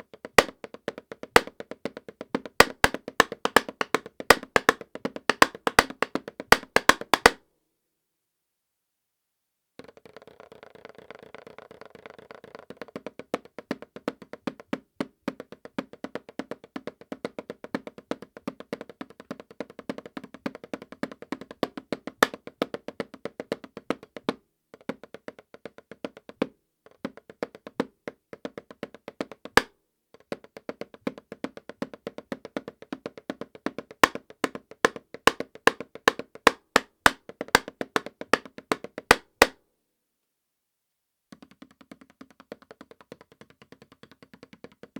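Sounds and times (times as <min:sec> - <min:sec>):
drumsticks on a practice pad: 0:00.3 - 0:00.6, 0:02.6 - 0:07.4.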